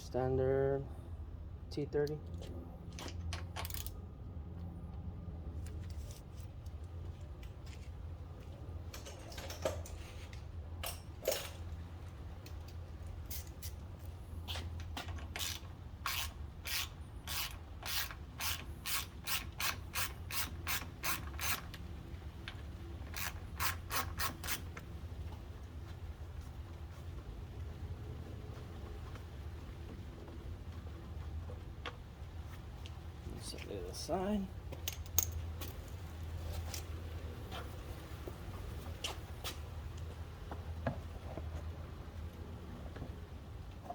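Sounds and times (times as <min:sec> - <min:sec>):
ratchet clicking: 0:15.3 - 0:21.8, 0:23.1 - 0:24.7.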